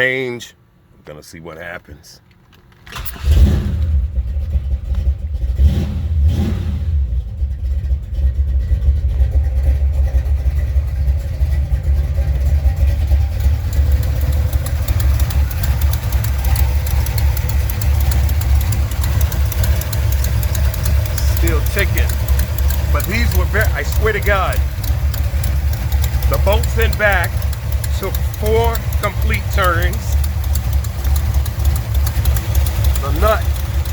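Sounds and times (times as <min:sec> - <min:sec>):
car engine idling: 0:02.3 - 0:33.9
exhaust leak ticking: 0:07.4 - 0:33.9.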